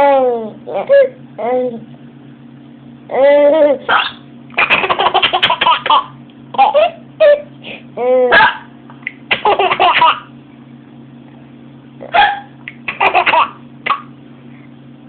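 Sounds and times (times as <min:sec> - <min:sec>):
child giggling: 0:04.6 - 0:07.5, 0:12.1 - 0:13.6
child hiccuping: 0:12.0 - 0:14.1.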